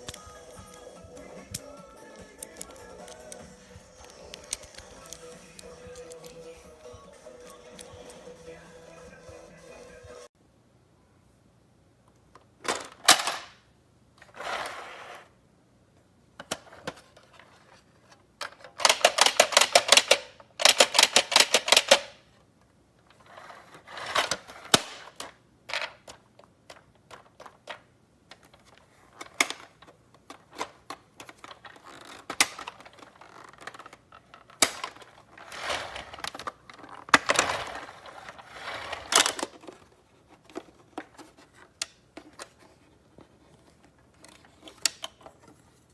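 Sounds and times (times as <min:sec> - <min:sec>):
small hard objects clicking: 0:00.0 - 0:08.2.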